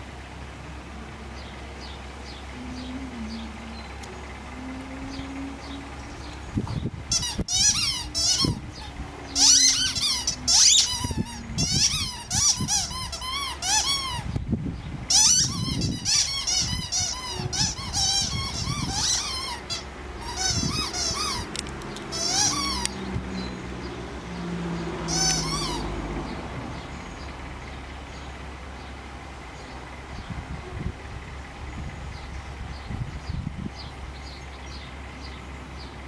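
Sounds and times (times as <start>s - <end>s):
squeaky toy squeaking: 7.1s - 14.4s, 15.1s - 23.0s, 25.0s - 26.0s.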